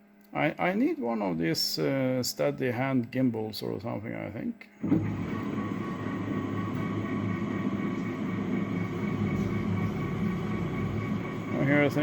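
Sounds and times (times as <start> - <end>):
faint steady whine: 0.0 - 12.0
machine drive humming: 4.6 - 12.0.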